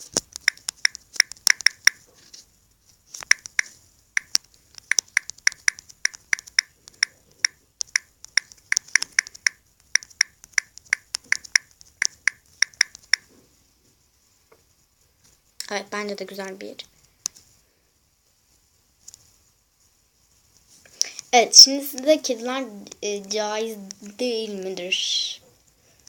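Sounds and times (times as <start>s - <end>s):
keyboard key clicks: 0.3s - 2.0s, 3.2s - 13.2s.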